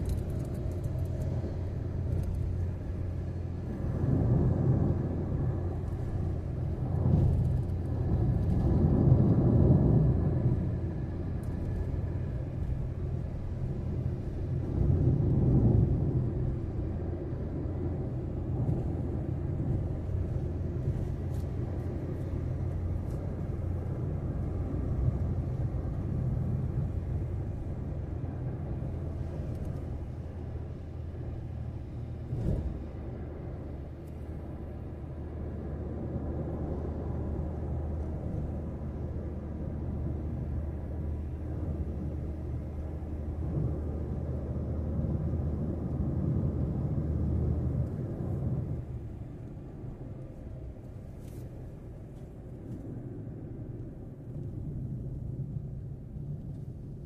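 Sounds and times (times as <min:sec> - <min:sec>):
car road noise rumble: 0:00.0 - 0:57.0.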